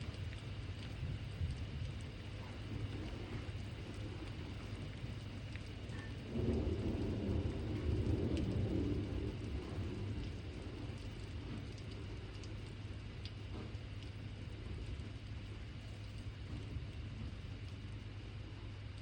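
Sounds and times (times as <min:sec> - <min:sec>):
rain falling steadily: 0:00.0 - 0:19.0
thunder rolling: 0:06.2 - 0:12.0.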